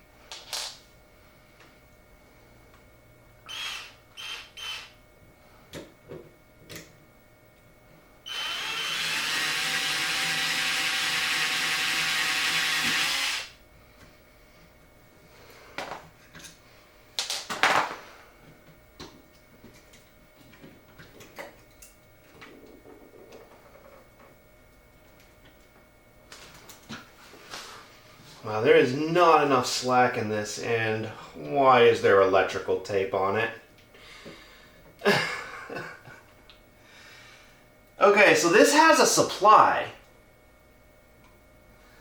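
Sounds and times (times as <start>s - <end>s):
power drill running: 3.5s - 5.0s, 8.3s - 13.6s.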